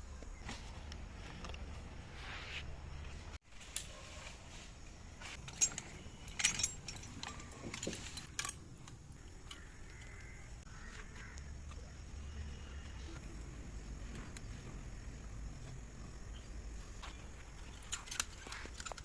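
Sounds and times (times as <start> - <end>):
light clinks and rustles: 3.6 - 10.1, 16.9 - 19.0
faint bird calls: 9.2 - 13.2.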